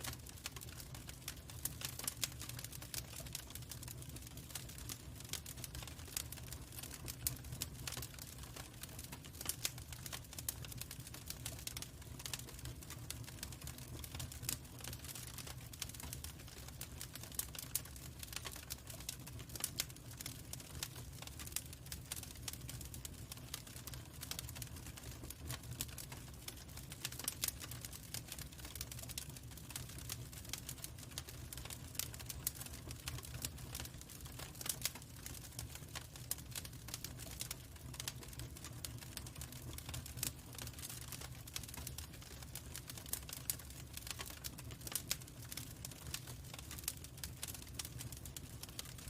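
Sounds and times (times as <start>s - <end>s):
log fire crackling and popping: 0.0s - 49.0s.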